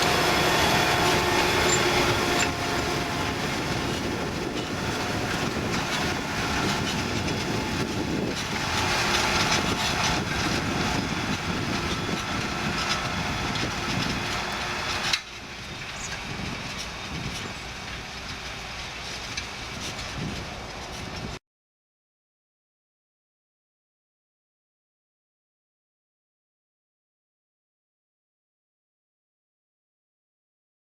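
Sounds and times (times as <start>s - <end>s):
tractor rumbling under load: 0.0s - 21.4s.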